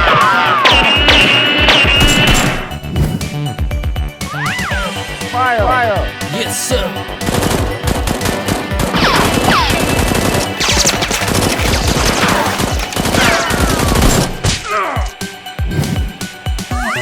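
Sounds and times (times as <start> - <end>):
rapid automatic gunfire: 9.7 - 14.3.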